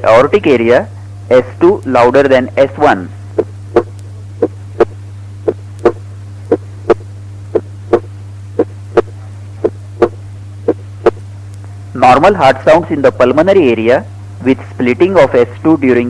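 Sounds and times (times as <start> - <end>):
steady low hum: 0.0 - 16.0
heartbeat lub-dub: 3.4 - 11.2.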